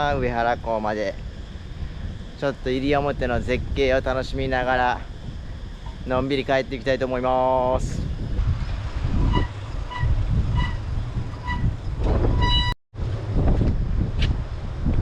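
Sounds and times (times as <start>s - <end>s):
wind buffeting microphone: 0.0s - 15.0s
short high-pitched squeaks: 9.2s - 12.8s.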